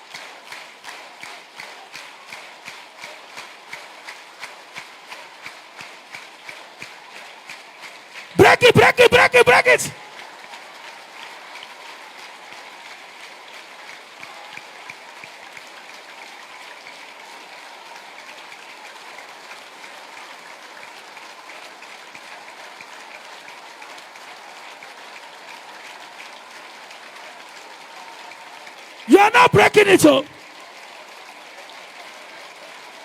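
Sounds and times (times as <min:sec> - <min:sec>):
congregation praying aloud: 0:08.4 - 0:10.0, 0:29.1 - 0:30.3.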